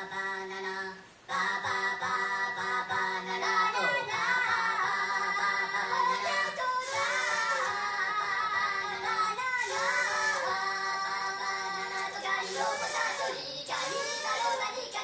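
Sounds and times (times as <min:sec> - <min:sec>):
high singing voices: 0:00.0 - 0:15.0
steady held tone: 0:03.7 - 0:15.0.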